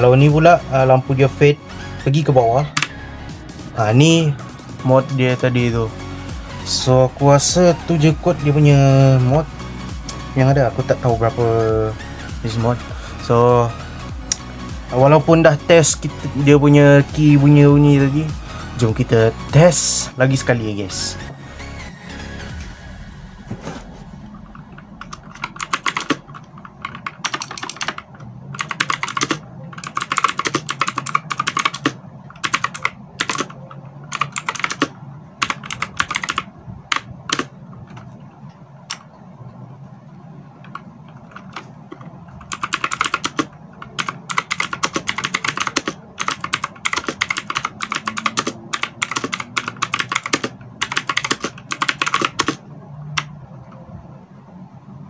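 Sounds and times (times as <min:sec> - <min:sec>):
mechanical keyboard typing: 0:24.5 - 0:37.5, 0:40.7 - 0:52.6.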